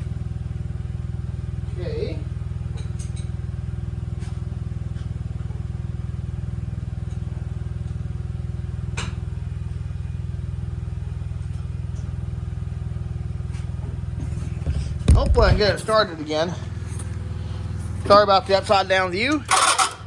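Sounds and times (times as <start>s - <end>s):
small engine running: 13.0s - 20.0s
sharp metallic click: 19.4s - 20.0s.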